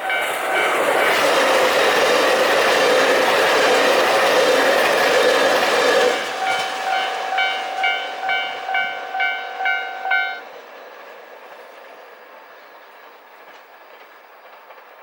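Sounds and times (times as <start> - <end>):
level-crossing alarm bell: 0.0 - 4.2, 5.1 - 10.6
diesel train passing: 0.0 - 15.0.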